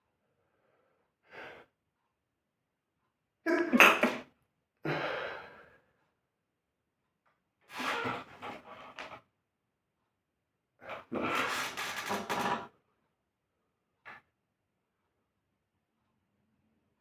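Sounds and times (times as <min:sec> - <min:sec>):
person sneezing: 0:03.5 - 0:04.3.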